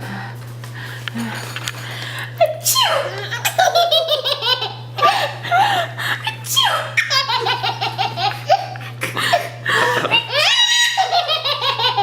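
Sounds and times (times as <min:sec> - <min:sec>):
baby laughing: 0:02.5 - 0:05.3, 0:06.2 - 0:12.0.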